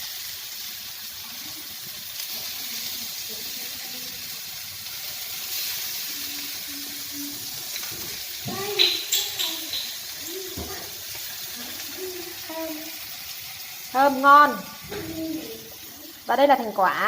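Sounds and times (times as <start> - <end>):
omelette sizzling in a pan: 0.0 - 17.0.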